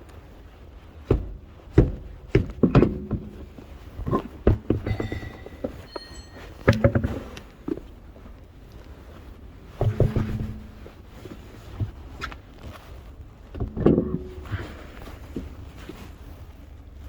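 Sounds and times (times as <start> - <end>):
knocks and metallic clatter: 1.0 - 7.9, 9.7 - 11.0, 13.5 - 15.6
brief ringing tone: 4.9 - 6.8.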